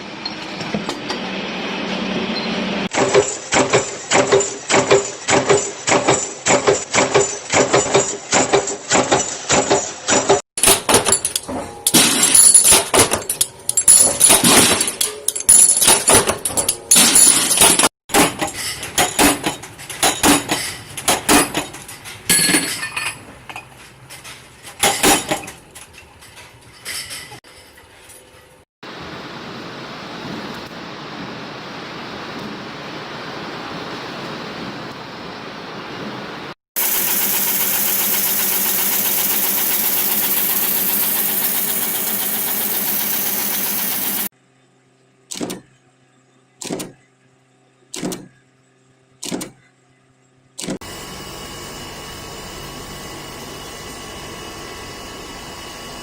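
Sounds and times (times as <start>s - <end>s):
rapid ringing strikes: 36.8s - 44.3s.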